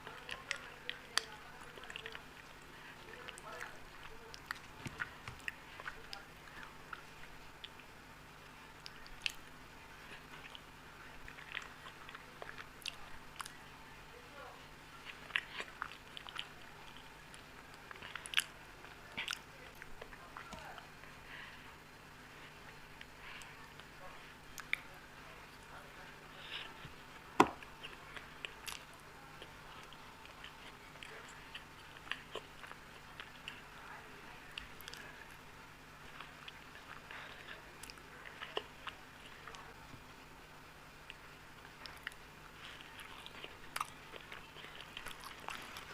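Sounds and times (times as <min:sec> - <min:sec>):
close chewing mouth clicks: 0:00.0 - 0:13.7, 0:14.9 - 0:21.6, 0:22.4 - 0:25.7, 0:26.4 - 0:33.8, 0:41.0 - 0:45.9.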